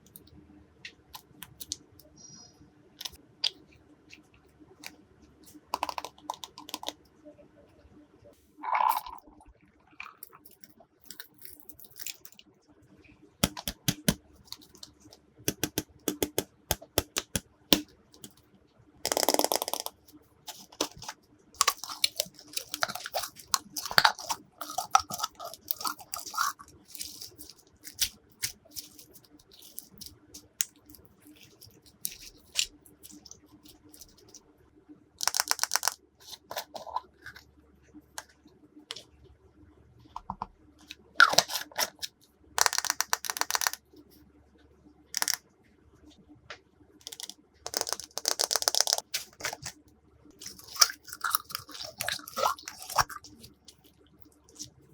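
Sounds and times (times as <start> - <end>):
slime clicking and popping: 13.4 - 14.9, 15.5 - 18.4, 19.1 - 20.0, 20.8 - 29.0, 35.2 - 36.0, 42.6 - 43.8, 47.1 - 49.7
slime squelching: 19.1 - 34.4, 47.1 - 54.9.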